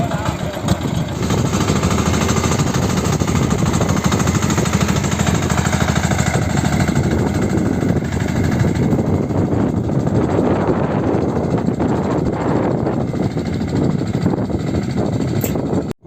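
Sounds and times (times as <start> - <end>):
cultivator engine running: 0.0 - 15.9.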